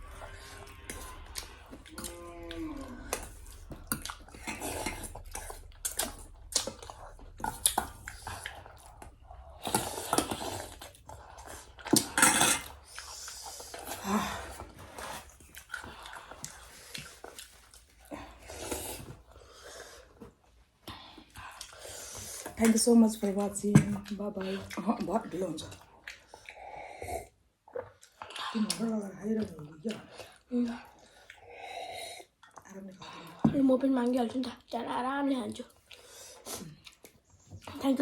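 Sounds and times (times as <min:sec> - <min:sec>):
slurping: 0:00.0 - 0:20.4
chewing: 0:00.0 - 0:38.0.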